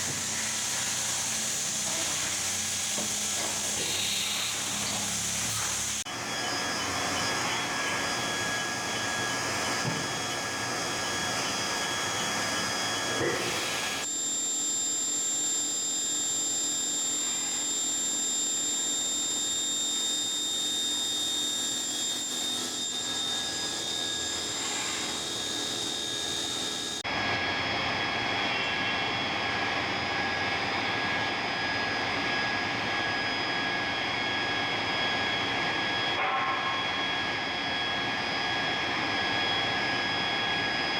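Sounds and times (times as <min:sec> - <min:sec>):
hiss: 0:00.0 - 0:06.0
machining center humming and whining: 0:00.0 - 0:40.9.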